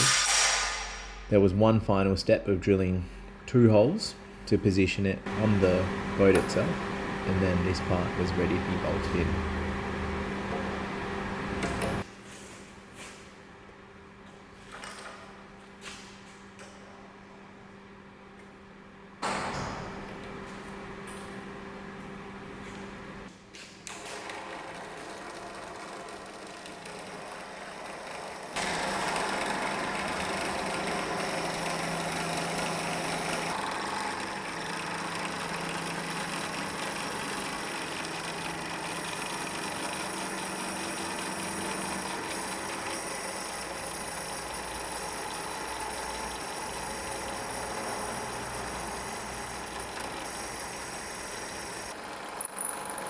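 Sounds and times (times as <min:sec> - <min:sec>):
electric drill running under load: 0:24.1 - 0:53.0.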